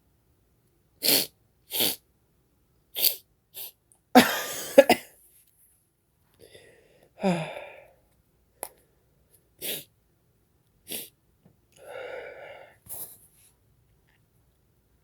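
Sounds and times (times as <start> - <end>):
short sharp sniffs: 3.0 - 3.8, 12.8 - 13.5
person sneezing loudly: 3.0 - 5.1
drawn-out voiced breath: 11.8 - 13.2.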